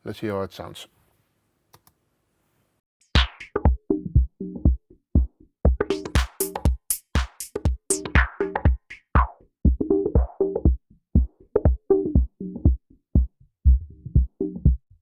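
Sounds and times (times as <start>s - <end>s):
electronic drum machine loop: 3.0s - 14.8s.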